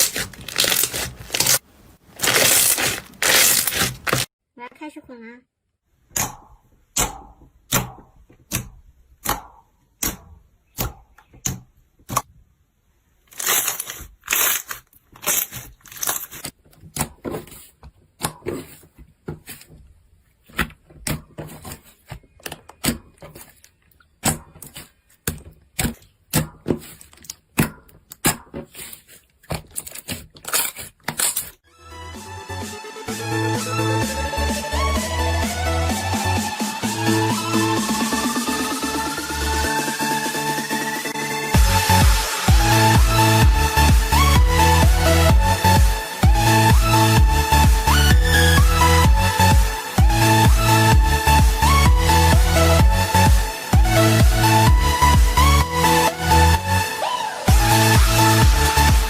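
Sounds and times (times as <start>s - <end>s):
slime squishing with clicks: 22.2s - 31.3s.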